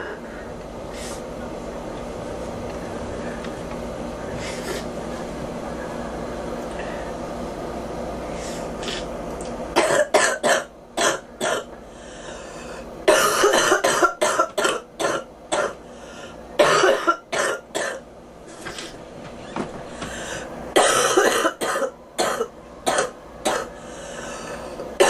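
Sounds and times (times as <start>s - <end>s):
girl coughing: 9.8s - 11.7s, 13.1s - 15.8s, 16.6s - 18.0s, 20.8s - 23.7s.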